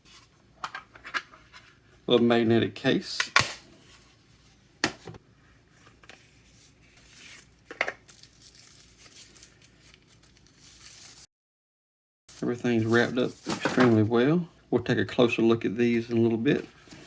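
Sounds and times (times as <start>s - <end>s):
plastic packaging crinkling and tearing: 7.1s - 11.3s.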